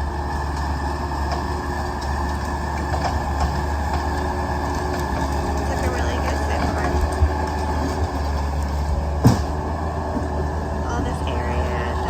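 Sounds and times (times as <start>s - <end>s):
diesel engine droning: 0.0s - 12.0s.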